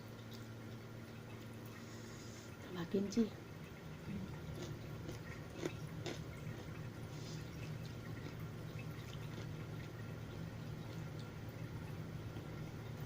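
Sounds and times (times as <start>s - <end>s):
person chewing wetly: 4.1s - 10.0s.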